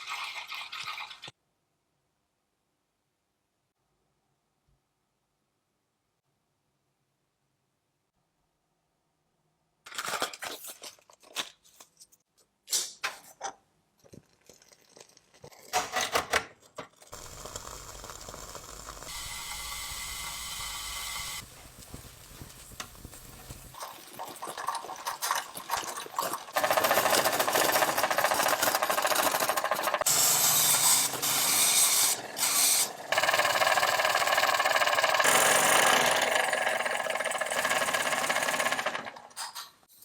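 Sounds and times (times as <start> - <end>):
small motor running: 17.2 - 23.8, 26.6 - 39.2.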